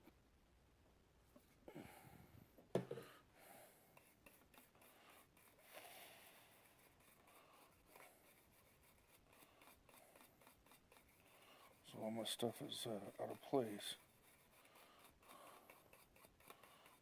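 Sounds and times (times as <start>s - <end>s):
brush scrubbing circuit board: 4.0s - 5.7s, 6.4s - 17.0s.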